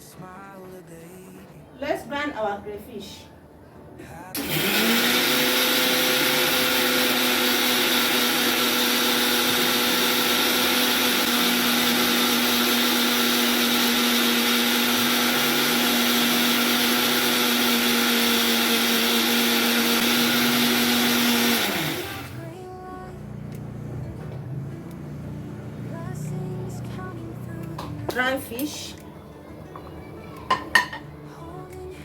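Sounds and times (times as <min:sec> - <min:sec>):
electric blender grinding: 0:04.4 - 0:22.4.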